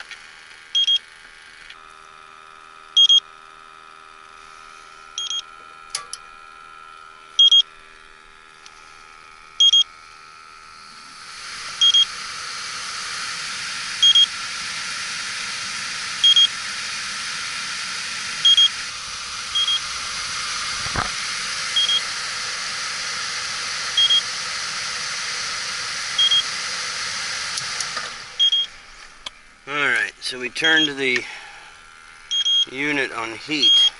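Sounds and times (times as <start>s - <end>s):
leak detector two-pitch beeps: 0.8s - 1.0s, 3.0s - 3.3s, 5.2s - 5.5s, 7.4s - 7.7s, 9.6s - 9.9s, 11.8s - 12.1s, 14.0s - 14.3s, 16.2s - 16.5s, 18.4s - 18.7s, 19.6s - 19.8s, 21.8s - 22.1s, 24.0s - 24.3s, 26.2s - 26.4s, 28.4s - 28.7s, 30.7s - 31.0s, 32.3s - 32.8s, 33.6s - 33.9s.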